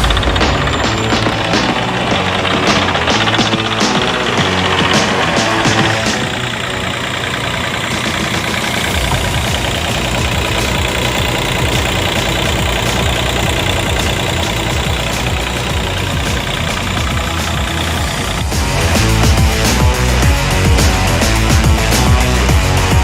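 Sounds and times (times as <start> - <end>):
excavator diesel engine running: 0.0 - 23.0.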